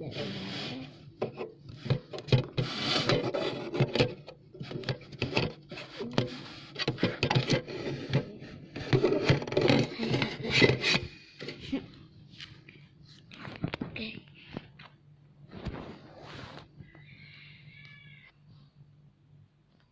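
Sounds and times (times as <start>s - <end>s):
close rubbing and scraping: 0.0s - 11.7s.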